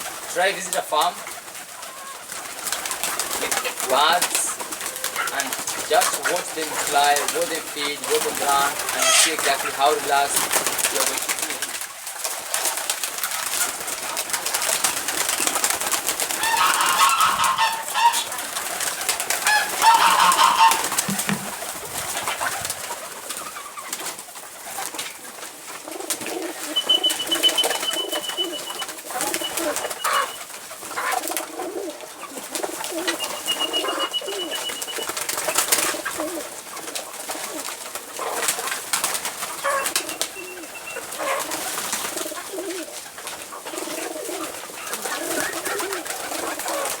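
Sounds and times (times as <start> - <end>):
pigeons cooing: 1.2 - 47.0
clicks and wing flutters: 1.6 - 9.8, 26.1 - 30.5, 32.5 - 36.1
loud bird calls: 8.4 - 10.1, 16.2 - 21.7, 26.4 - 30.5, 32.6 - 36.0, 39.4 - 41.8
thin high trill: 9.0 - 9.4, 26.8 - 30.4, 33.0 - 35.6.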